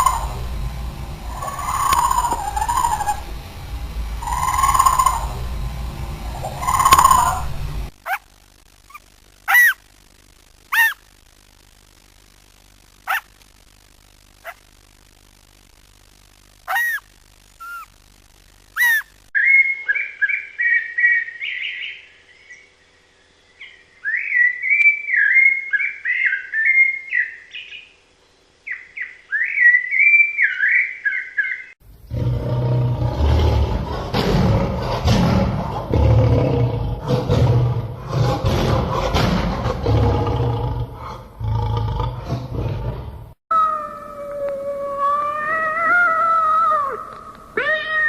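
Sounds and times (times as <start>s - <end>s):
deep animal sound: 0.0s - 7.9s, 32.0s - 47.7s
songbird singing: 0.0s - 8.2s, 16.7s - 17.9s, 18.8s - 31.8s
short sharp bird calls: 8.9s - 9.8s, 16.7s - 17.0s, 18.8s - 22.0s.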